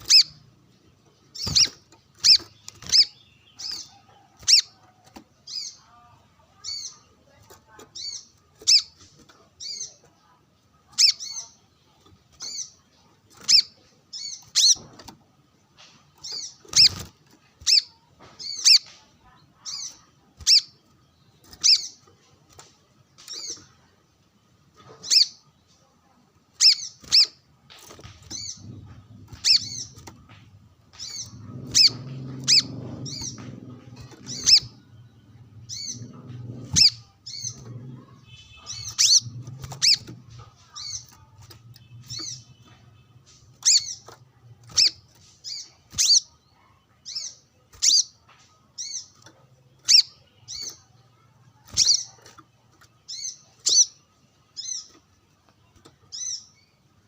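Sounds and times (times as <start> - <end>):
bird high chirps: 0.0 - 0.5, 1.3 - 6.0, 10.9 - 11.6, 16.2 - 22.1, 26.6 - 27.4, 28.0 - 30.2, 30.9 - 48.2, 48.8 - 51.0, 51.6 - 55.0.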